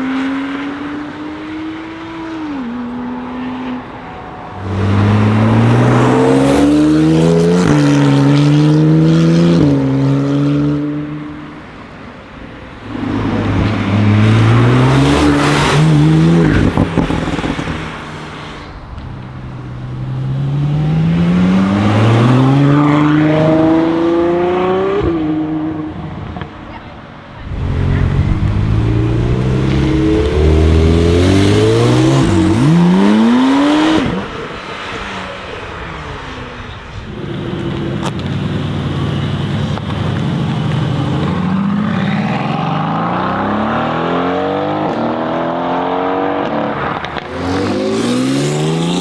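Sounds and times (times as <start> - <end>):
sports car accelerating hard: 0.0 - 49.0
exhaust pops: 27.3 - 34.9.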